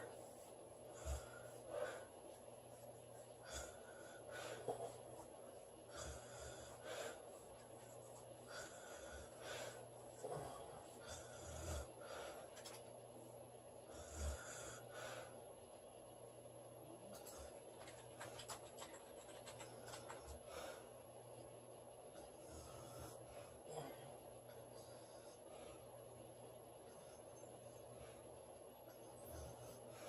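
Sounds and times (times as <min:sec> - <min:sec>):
woman snoring softly: 0:22.4 - 0:24.2.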